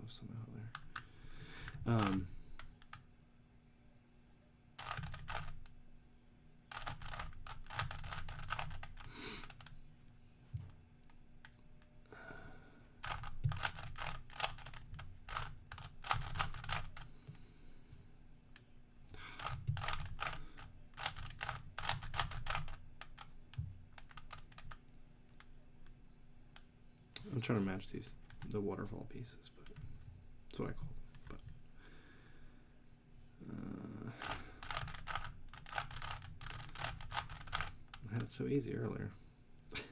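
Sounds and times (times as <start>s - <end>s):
puzzle cube plastic clicks: 0.8s - 3.0s, 4.8s - 5.7s, 6.7s - 9.8s, 13.0s - 17.1s, 19.4s - 24.8s, 34.2s - 38.3s.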